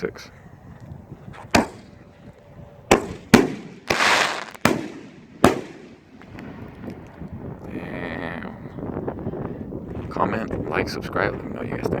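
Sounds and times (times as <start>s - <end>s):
firework booms: 1.6s - 1.9s, 2.9s - 7.0s.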